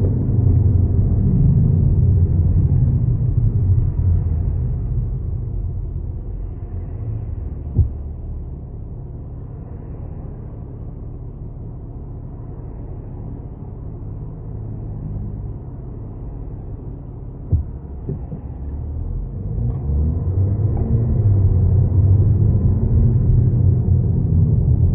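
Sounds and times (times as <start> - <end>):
wheel bearing rumbling drone: 0.0 - 24.9.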